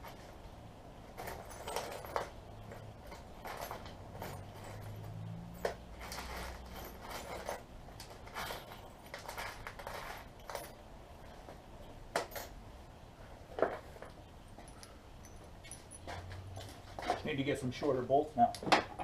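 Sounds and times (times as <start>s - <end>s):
metal tools clinking and rattling: 1.1s - 11.4s, 13.6s - 17.5s.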